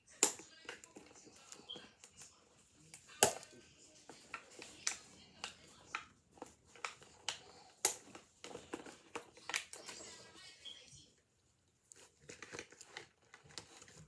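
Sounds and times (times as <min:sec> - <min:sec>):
sharp clicks and taps of toys: 0:00.2 - 0:01.1, 0:03.2 - 0:03.5, 0:06.8 - 0:10.0.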